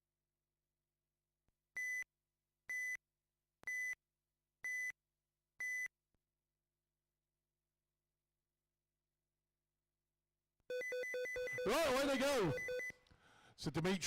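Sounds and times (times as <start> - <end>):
short electronic beeps: 10.7 - 13.0.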